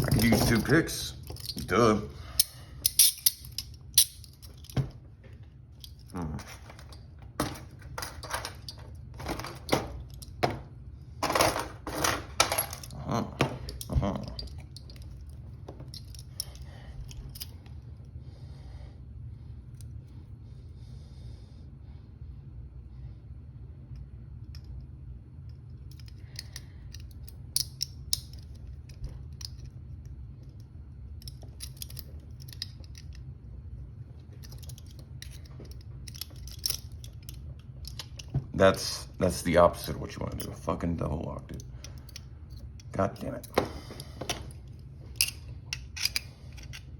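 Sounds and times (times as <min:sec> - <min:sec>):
handcuffs and lock picks clicking: 0:00.0 - 0:04.8, 0:05.8 - 0:10.4, 0:11.9 - 0:17.8, 0:25.5 - 0:33.3, 0:34.4 - 0:38.3, 0:41.5 - 0:46.9
steady low hum: 0:00.0 - 0:46.9.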